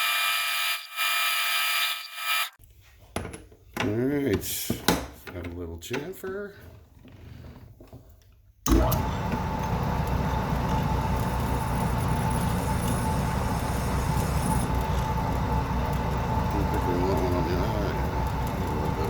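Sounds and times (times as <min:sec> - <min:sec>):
metal lathe running: 0:08.7 - 0:19.0.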